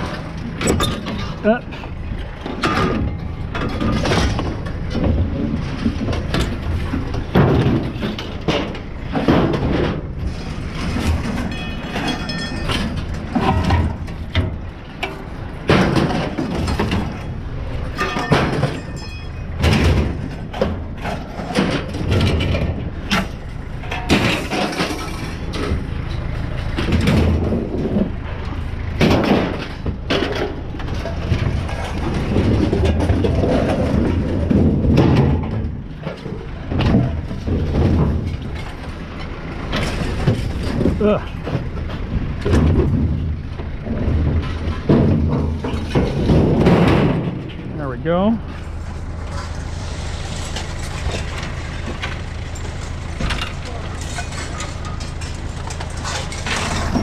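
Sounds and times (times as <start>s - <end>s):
scrap metal clanging onto a pile: 0.0s - 57.0s
metal pieces ringing: 11.4s - 13.1s, 17.9s - 19.8s.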